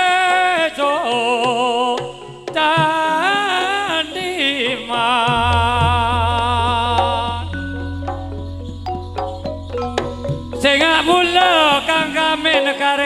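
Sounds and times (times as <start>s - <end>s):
deep steady low tone: 5.3s - 12.6s
instrumental accompaniment: 5.3s - 13.0s.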